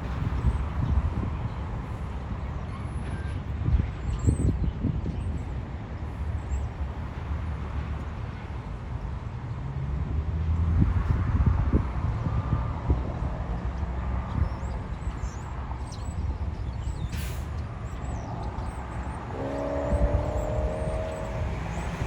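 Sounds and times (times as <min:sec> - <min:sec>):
heavy engine rumbling: 0:17.2 - 0:22.0.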